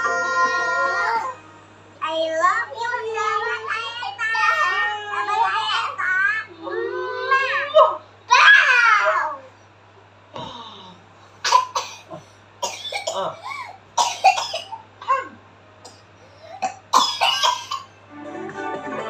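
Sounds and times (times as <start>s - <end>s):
child coughing: 11.4s - 17.9s.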